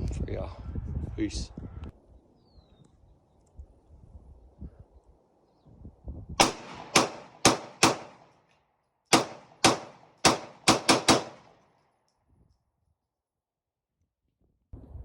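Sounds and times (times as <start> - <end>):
pistol shots: 6.4 - 8.4, 9.1 - 11.6.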